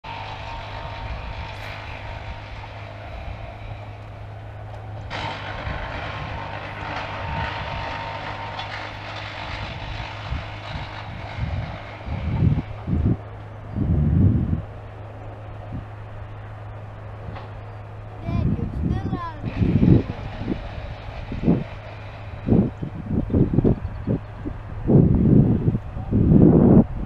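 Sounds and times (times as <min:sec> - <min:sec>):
motor droning: 0:00.0 - 0:27.0.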